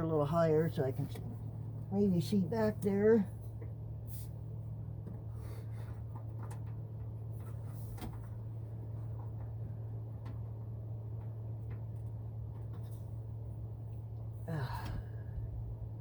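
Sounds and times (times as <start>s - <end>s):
steady low hum: 0.0s - 16.0s.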